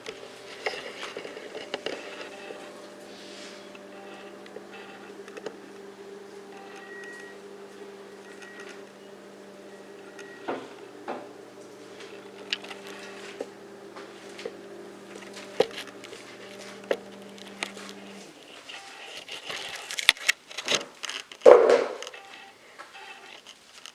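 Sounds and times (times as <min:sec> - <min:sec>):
steady low hum: 0:00.0 - 0:19.9
knocks and clicks of handled items: 0:19.5 - 0:22.3.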